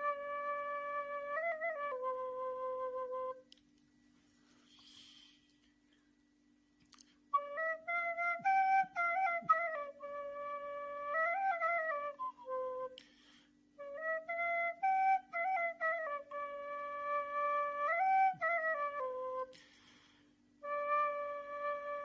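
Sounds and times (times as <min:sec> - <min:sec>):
end-blown flute melody: 0:00.0 - 0:03.5, 0:07.4 - 0:13.0.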